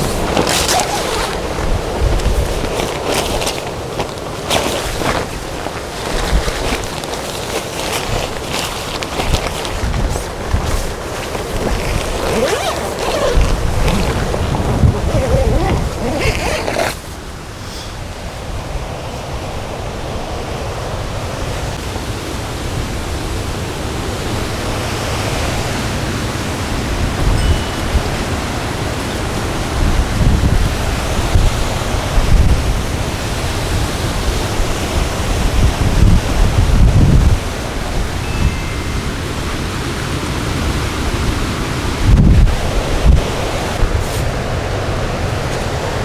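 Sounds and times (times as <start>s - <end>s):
gusty wind buffeting microphone: 0.0s - 17.0s, 41.2s - 45.7s.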